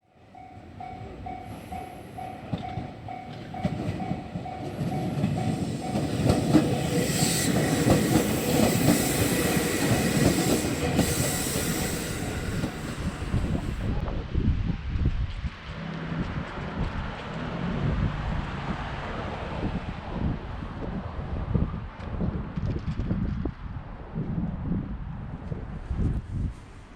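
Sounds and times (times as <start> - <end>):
electric train passing: 0.1 - 20.7
level-crossing warning bell: 0.2 - 13.6
train hiss: 1.2 - 2.5, 4.8 - 14.0.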